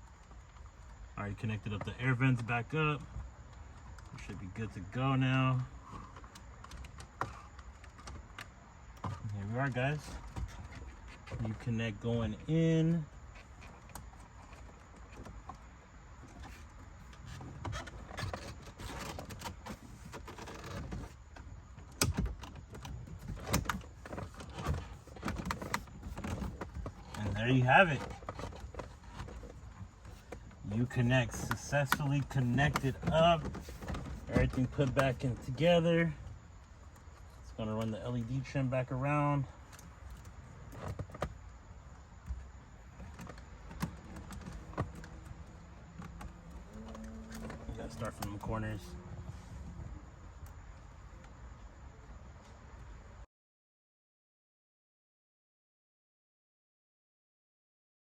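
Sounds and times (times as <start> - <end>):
plastic parts clicking and scraping: 21.8 - 27.4, 28.0 - 35.4, 42.2 - 49.0.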